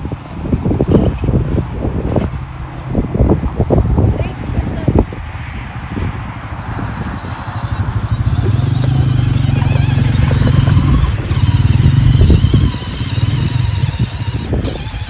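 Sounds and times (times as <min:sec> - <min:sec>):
quad bike engine hum: 0:06.2 - 0:15.0.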